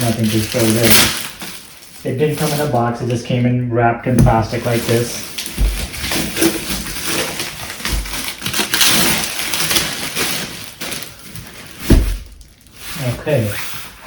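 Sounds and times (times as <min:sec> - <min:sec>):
plastic wrapping crinkling: 0:00.0 - 0:03.4, 0:04.0 - 0:14.0
dull thump: 0:04.1 - 0:04.6, 0:11.8 - 0:12.4.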